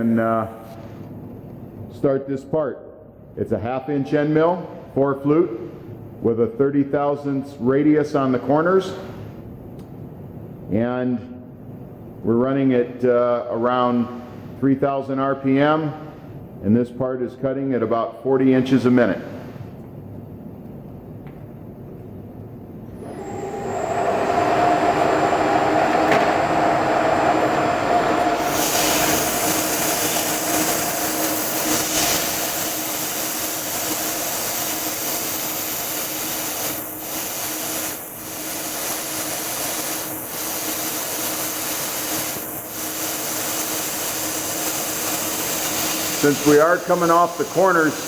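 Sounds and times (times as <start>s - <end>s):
milling machine drone: 23.0s - 48.0s
loud hiss: 23.1s - 48.0s.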